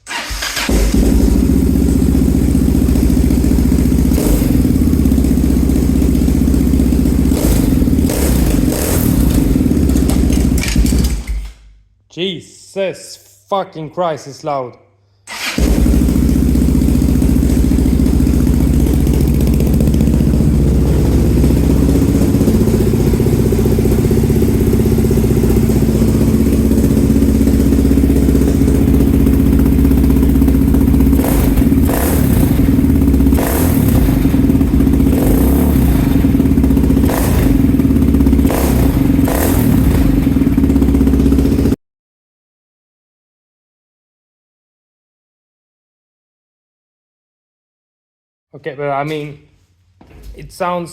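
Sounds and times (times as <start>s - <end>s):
loud motorcycle engine running: 0.2s - 11.3s, 15.4s - 41.8s.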